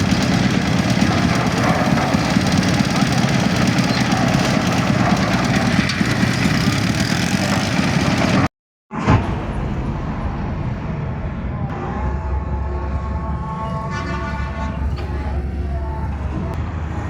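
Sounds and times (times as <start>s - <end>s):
concrete mixer engine running: 0.0s - 8.5s.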